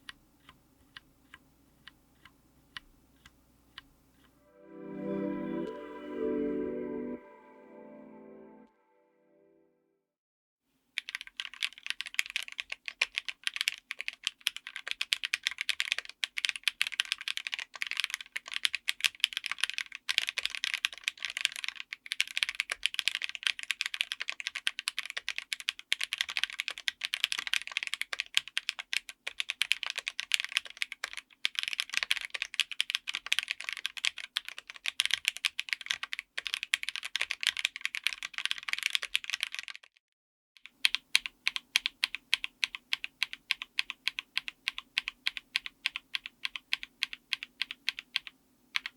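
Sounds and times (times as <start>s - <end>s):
fast typing on mechanical keyboard: 11.0s - 40.0s, 40.6s - 48.9s.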